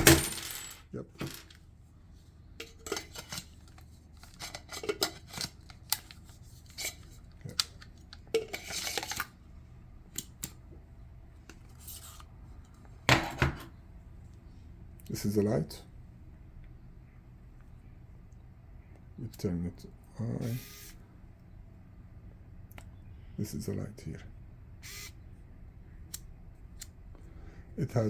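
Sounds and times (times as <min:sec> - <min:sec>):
tool parts clicking and rattling: 0:00.0 - 0:01.6, 0:02.6 - 0:09.3.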